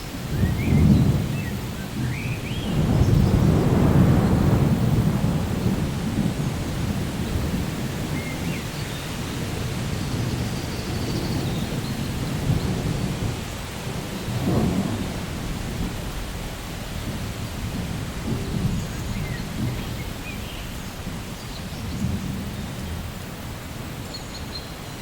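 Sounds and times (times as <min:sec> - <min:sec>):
steady rain: 0:00.0 - 0:25.0
rolling thunder: 0:00.3 - 0:23.9.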